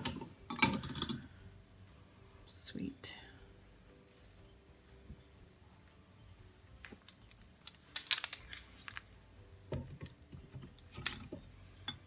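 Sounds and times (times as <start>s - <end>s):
glass jars clinking: 0.0s - 1.3s.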